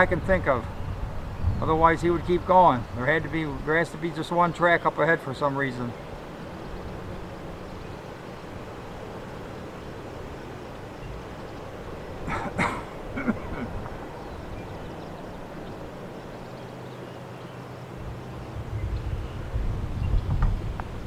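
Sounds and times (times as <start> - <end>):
low steady hum: 5.9 - 21.0
low rumble: 18.0 - 21.0.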